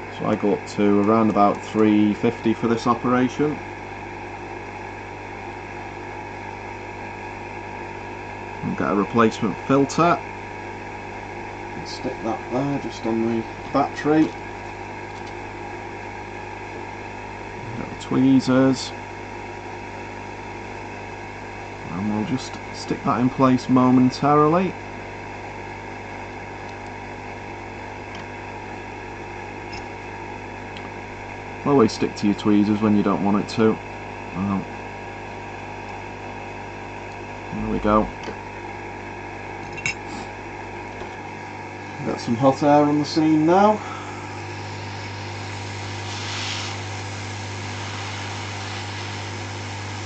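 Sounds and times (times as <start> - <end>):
hot air blower hissing: 0.0 - 25.4, 37.5 - 50.0
low electrical hum: 0.0 - 50.0.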